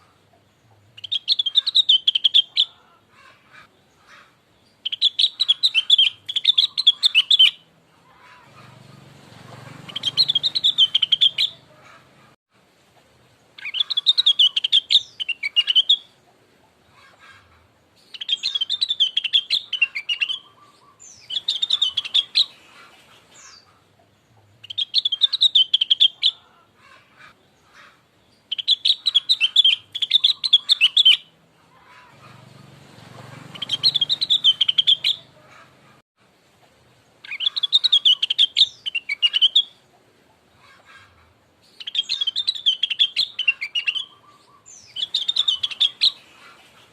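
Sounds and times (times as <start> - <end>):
bird chattering high chirps: 1.0 - 2.8, 4.8 - 7.6, 9.9 - 12.2, 13.6 - 16.1, 18.0 - 23.7, 24.6 - 26.4, 28.5 - 31.3, 33.5 - 35.8, 37.2 - 39.8, 41.6 - 46.6.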